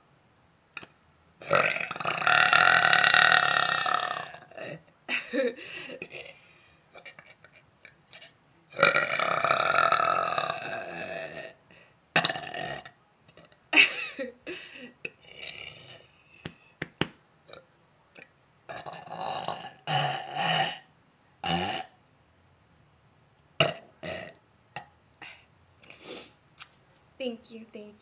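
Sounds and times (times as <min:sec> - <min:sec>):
woman belching: 0:01.4 - 0:04.8, 0:08.8 - 0:11.6, 0:12.2 - 0:12.9, 0:18.7 - 0:21.9, 0:23.6 - 0:24.9.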